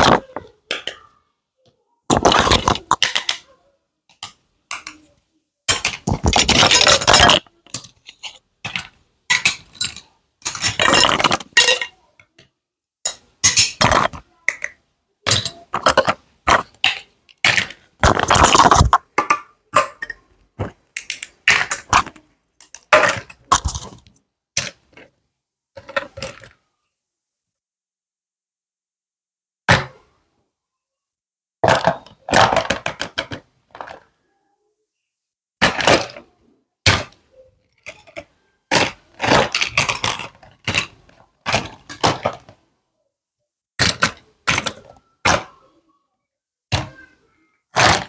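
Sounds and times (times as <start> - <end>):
plastic toy pieces clattering: 0.0 - 1.1, 2.1 - 3.5, 4.1 - 5.1, 5.7 - 25.1, 25.8 - 26.6, 31.6 - 34.0, 35.6 - 36.2, 37.8 - 42.6, 43.8 - 45.5, 47.7 - 48.0.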